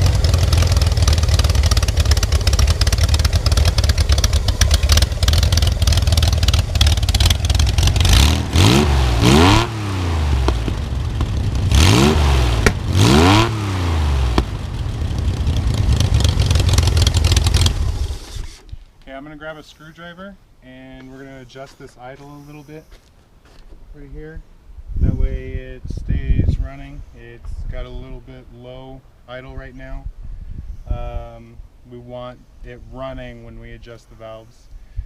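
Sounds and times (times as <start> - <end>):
car engine idling and revving: 0.0 - 18.7.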